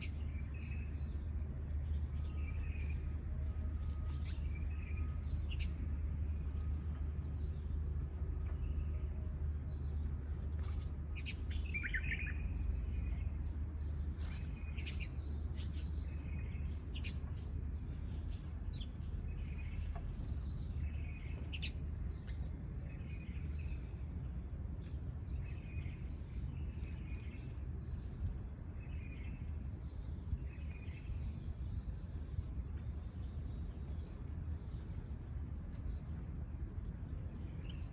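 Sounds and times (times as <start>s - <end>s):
steady low rumble: 0.0s - 37.9s
sparrows chirping: 3.9s - 6.0s, 11.2s - 24.3s, 25.2s - 36.6s, 37.4s - 37.9s.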